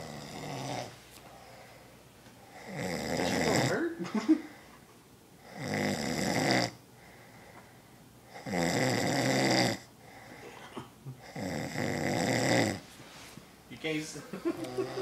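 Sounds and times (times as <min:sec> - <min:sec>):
man snoring loudly: 0:00.0 - 0:00.9, 0:02.6 - 0:03.8, 0:05.5 - 0:06.8, 0:08.3 - 0:09.9, 0:11.2 - 0:12.8.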